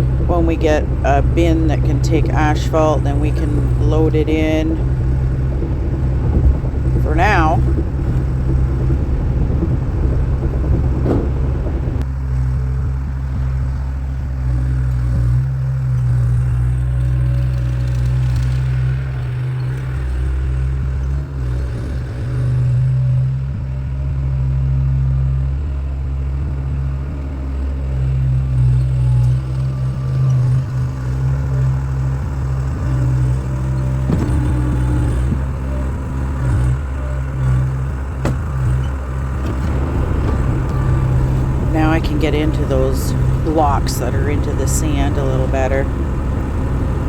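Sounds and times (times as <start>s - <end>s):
loader engine droning: 0.0s - 47.0s
machine knocks: 7.6s - 12.0s, 33.9s - 36.3s, 38.2s - 41.7s.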